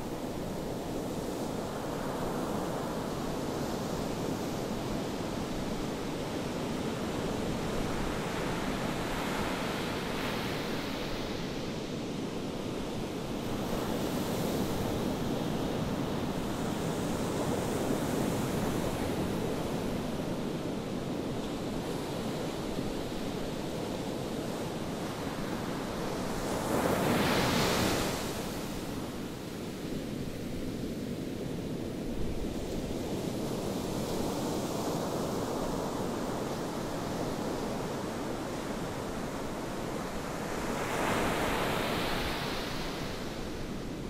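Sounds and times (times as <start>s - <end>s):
ocean waves on beach: 31.4s - 44.0s.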